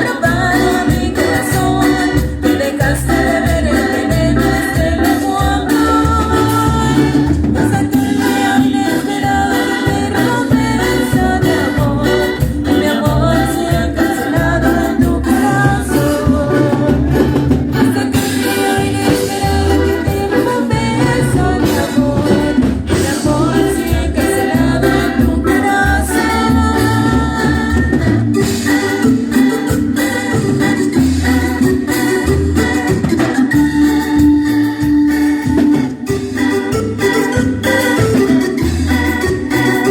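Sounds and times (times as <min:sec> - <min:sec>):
person singing: 0:00.0 - 0:30.4
band playing live: 0:00.0 - 0:39.9.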